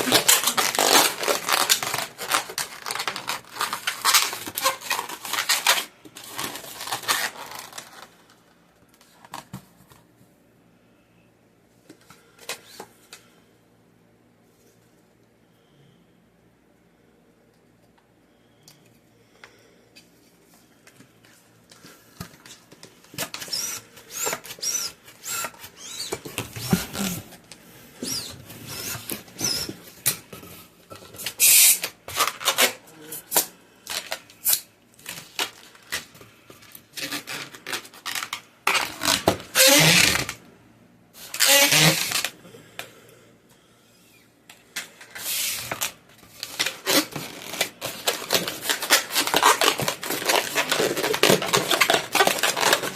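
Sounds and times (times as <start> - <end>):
rubber balloon squeaks and creaks: 0.0 - 8.0, 23.2 - 27.4, 28.0 - 30.0, 31.3 - 32.8, 37.0 - 40.4, 41.2 - 42.3, 45.2 - 52.9.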